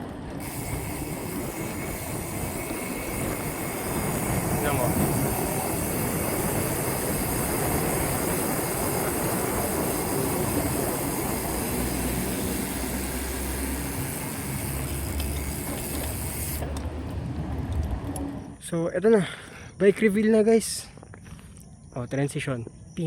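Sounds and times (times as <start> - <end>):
bicycle tyres on road: 0.0 - 21.6
wind on microphone: 0.4 - 11.2.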